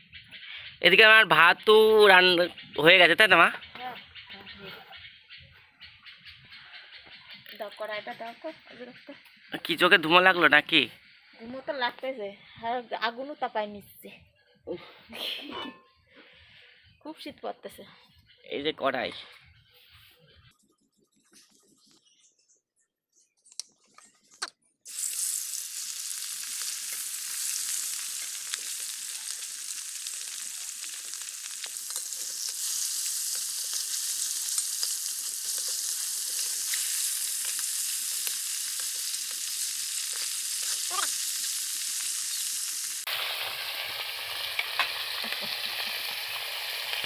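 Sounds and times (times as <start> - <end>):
hot oil sizzling: 0.0 - 4.7, 9.3 - 11.6, 24.9 - 47.0.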